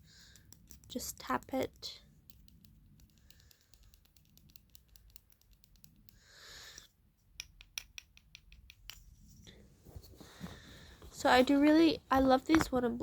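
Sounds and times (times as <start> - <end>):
wooden block tapping on ring: 7.4 - 9.1
soft rustle: 9.0 - 13.0.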